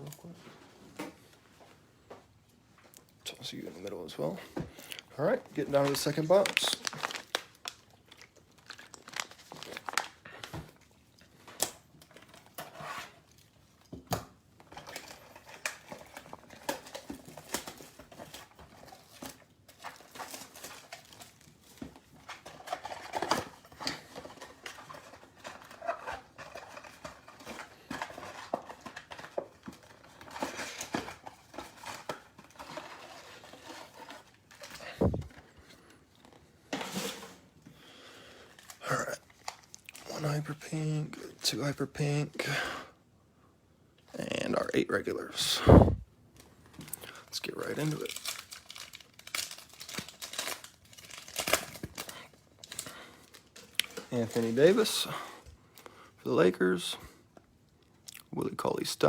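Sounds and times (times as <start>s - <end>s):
packaging crinkling and tearing: 4.8s - 13.9s, 14.6s - 37.4s, 38.3s - 42.4s, 46.4s - 55.2s.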